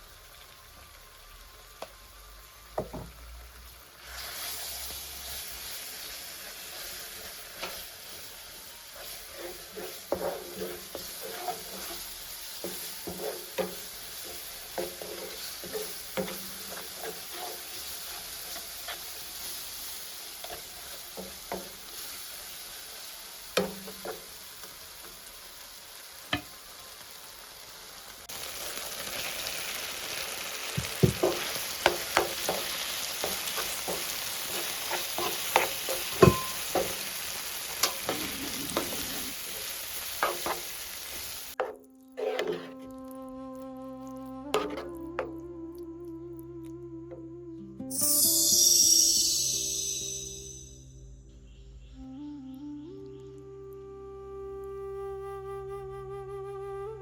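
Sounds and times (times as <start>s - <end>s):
food sizzling in a pan: 0.0s - 45.9s, 47.9s - 51.0s
spoon scraping a pan: 8.9s - 19.4s, 30.9s - 43.0s, 44.5s - 45.4s.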